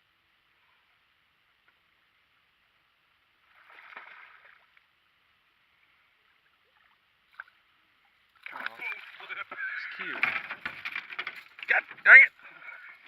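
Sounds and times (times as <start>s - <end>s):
water sloshing: 3.4s - 4.9s, 8.3s - 13.0s.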